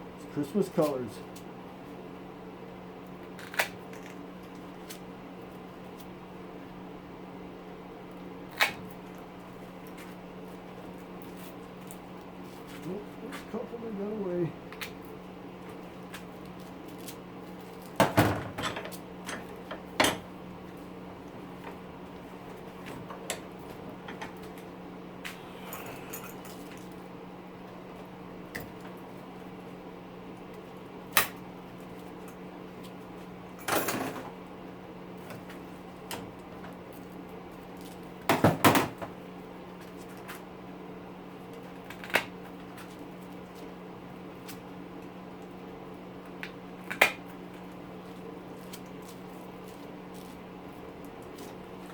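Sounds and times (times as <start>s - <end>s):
steady low hum: 0.0s - 38.3s.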